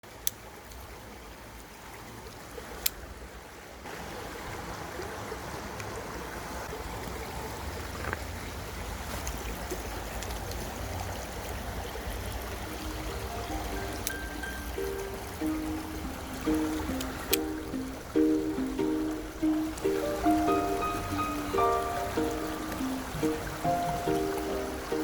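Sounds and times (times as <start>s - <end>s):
stream water running: 0.0s - 25.0s
sharp clicks: 16.5s - 18.7s.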